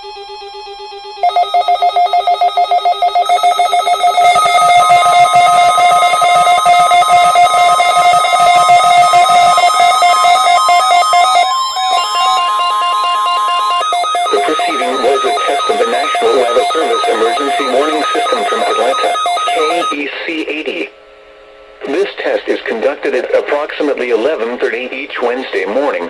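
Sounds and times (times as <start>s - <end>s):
steady warning alarm tone: 0.0s - 20.2s
warbling electronic alert tones: 1.2s - 20.0s.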